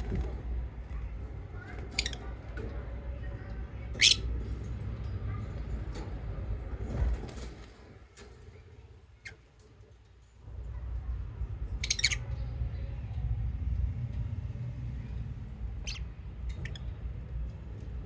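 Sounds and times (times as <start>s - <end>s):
low steady rumble: 0.0s - 18.0s
lovebirds chirping: 15.8s - 17.2s.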